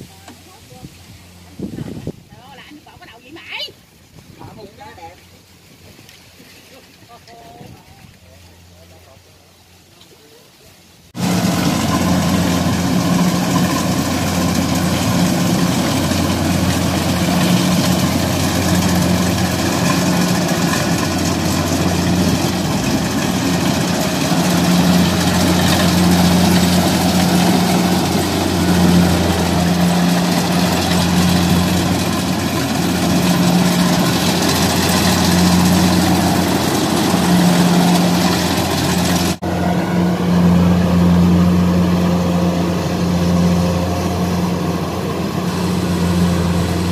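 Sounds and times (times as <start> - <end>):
diesel engine drone: 11.2 - 46.9
machinery noise: 11.2 - 46.9.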